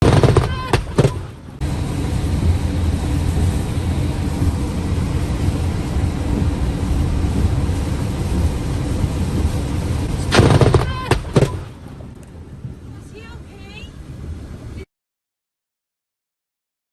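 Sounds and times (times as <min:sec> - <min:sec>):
thunderclap: 0:00.0 - 0:13.0
heavy rain: 0:00.0 - 0:14.9
wind: 0:00.0 - 0:14.9.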